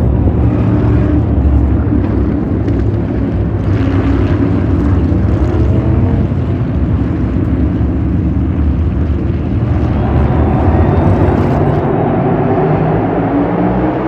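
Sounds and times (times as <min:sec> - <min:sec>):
race car engines droning: 0:00.0 - 0:14.0.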